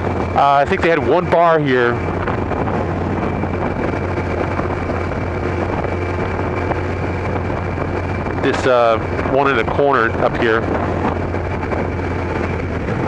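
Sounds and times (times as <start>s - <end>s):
motorcycle engine cruising: 0.0s - 13.0s
wind rushing: 0.0s - 13.0s.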